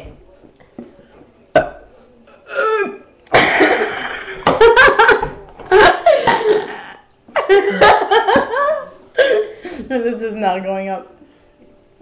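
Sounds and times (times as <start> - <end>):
coughing: 1.5 - 1.9, 2.5 - 4.4, 5.0 - 7.1.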